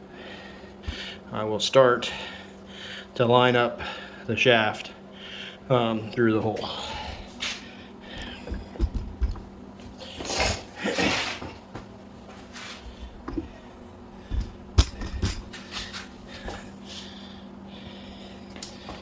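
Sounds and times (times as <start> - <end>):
metal clunks and knocks: 8.4 - 9.5.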